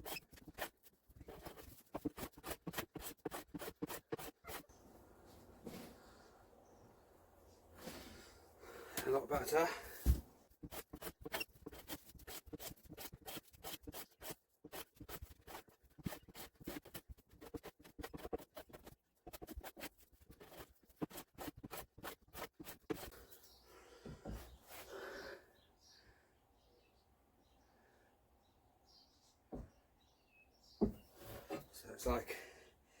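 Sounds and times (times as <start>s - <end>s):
hand plane scraping wood: 0.0s - 4.7s, 10.6s - 23.2s.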